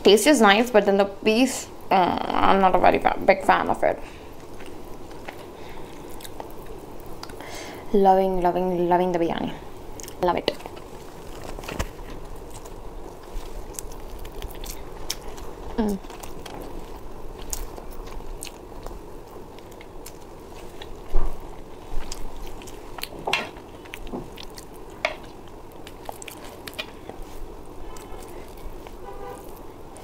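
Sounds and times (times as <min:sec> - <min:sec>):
person chewing food: 0:04.3 - 0:07.5, 0:09.9 - 0:30.0.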